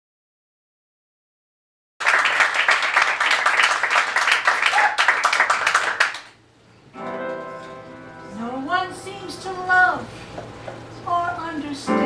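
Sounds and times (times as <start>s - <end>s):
audience applauding: 2.0s - 6.4s.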